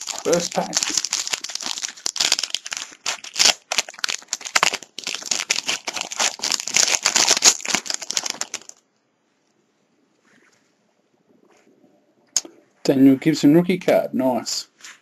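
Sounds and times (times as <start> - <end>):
card pack wrapper tearing and crinkling: 0.0 - 8.8.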